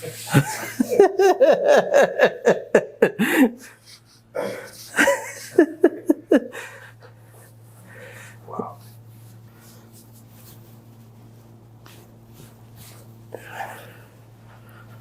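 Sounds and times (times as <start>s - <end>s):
person laughing: 0.2s - 7.0s.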